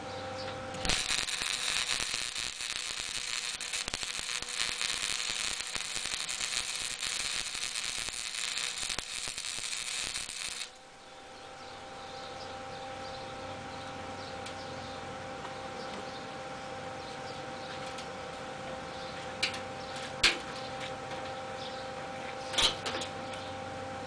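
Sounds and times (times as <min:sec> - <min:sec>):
arc welding crackling hiss: 0:00.7 - 0:10.8.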